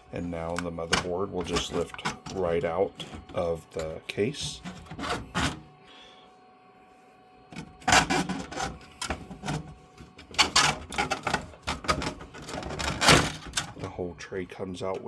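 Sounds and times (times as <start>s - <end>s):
plastic parts clattering and scraping: 0.8s - 5.6s, 7.6s - 13.9s.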